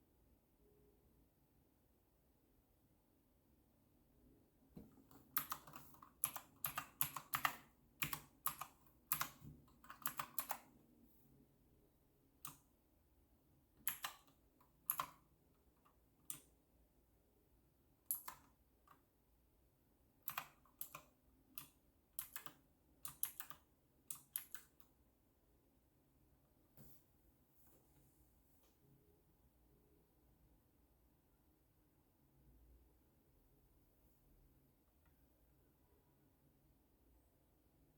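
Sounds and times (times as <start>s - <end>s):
clicky keyboard keystrokes: 4.8s - 10.7s, 13.8s - 15.2s, 18.1s - 18.6s, 20.2s - 24.9s.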